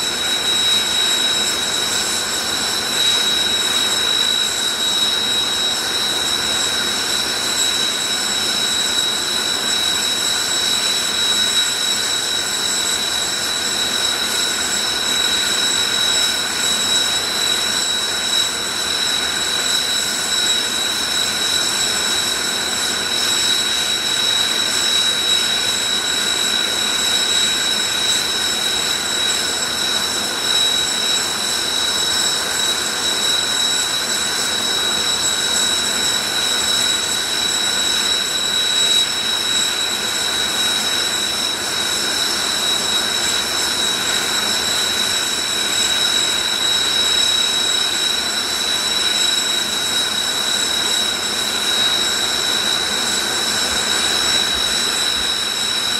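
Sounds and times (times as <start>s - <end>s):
jet engine turbine whine: 0.0s - 55.9s.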